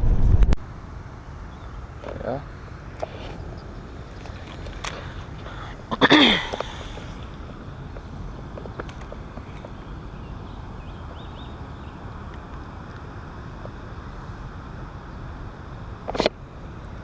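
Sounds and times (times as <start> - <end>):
wind noise on microphone: 0.0 - 0.7.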